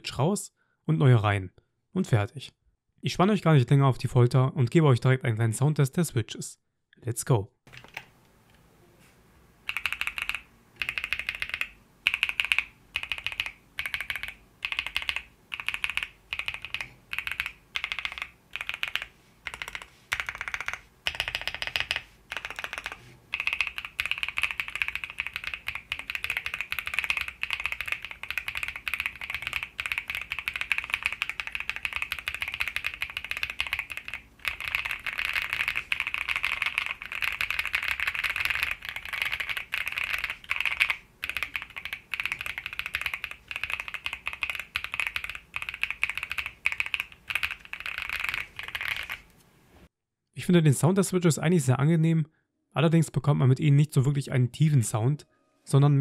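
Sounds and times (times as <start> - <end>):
mechanical keyboard typing: 7.7 - 8.1, 9.7 - 49.2.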